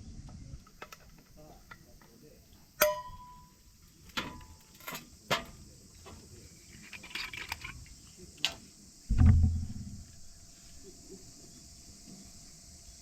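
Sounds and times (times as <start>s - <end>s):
crickets chirring: 0.0s - 13.0s
sharp clicks and knocks: 9.1s - 10.4s
loud low thump: 9.1s - 10.5s.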